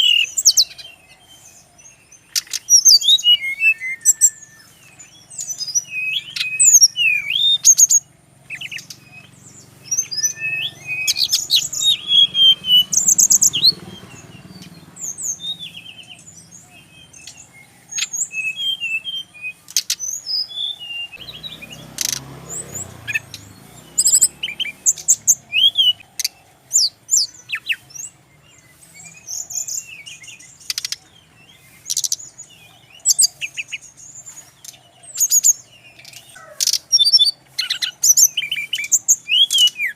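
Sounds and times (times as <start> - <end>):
bird song with chirps and trills: 0.0 - 39.9.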